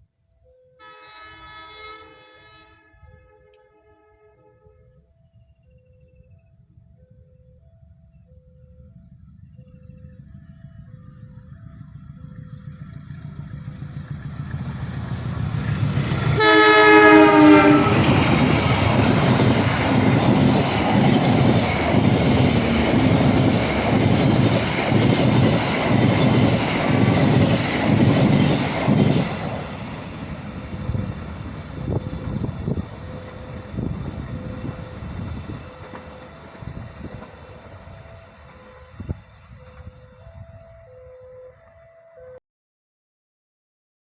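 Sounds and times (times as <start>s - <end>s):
train horn blast: 0.8s - 4.8s, 16.2s - 18.7s
diesel locomotive rumble: 9.0s - 41.0s.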